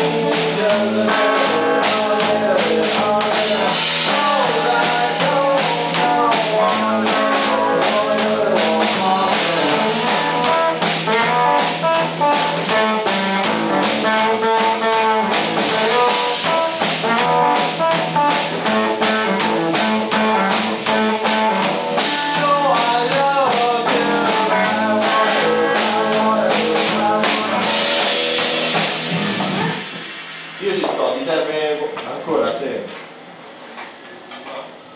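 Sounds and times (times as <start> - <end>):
live band playing: 0.0 - 31.9
steady drum beat: 0.0 - 33.2
guitar: 0.0 - 34.9.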